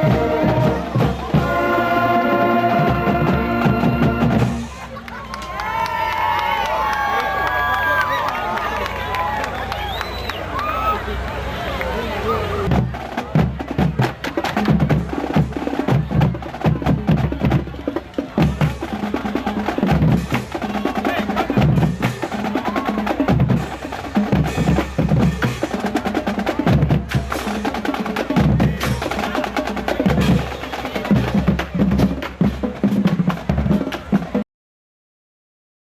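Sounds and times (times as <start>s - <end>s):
percussion-heavy music: 12.7s - 34.4s.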